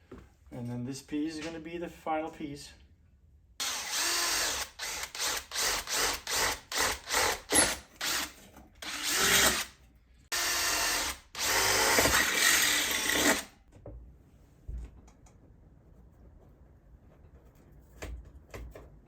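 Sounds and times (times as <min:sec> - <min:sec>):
power drill cutting: 0:03.6 - 0:09.7, 0:10.3 - 0:13.5.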